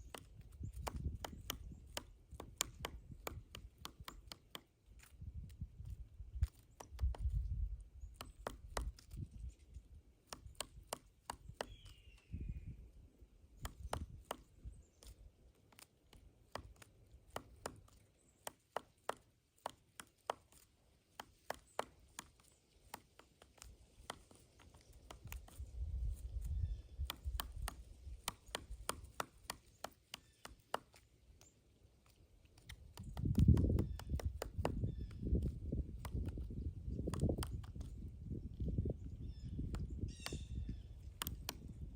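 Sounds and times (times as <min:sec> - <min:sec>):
woodpecker knocking on wood: 0:00.0 - 0:05.1, 0:05.8 - 0:09.5, 0:10.2 - 0:12.2, 0:13.5 - 0:41.9.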